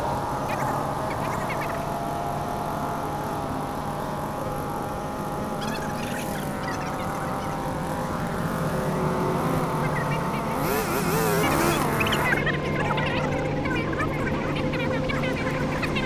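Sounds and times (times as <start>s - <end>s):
chainsaw cutting: 0.0s - 12.4s.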